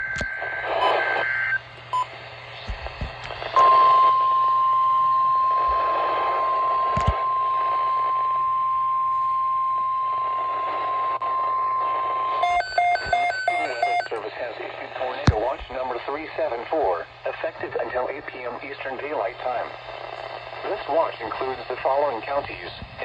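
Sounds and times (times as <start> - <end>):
radio static hiss: 0.0 - 4.2, 5.4 - 8.4, 10.1 - 23.0
steady warning alarm tone: 3.6 - 14.1.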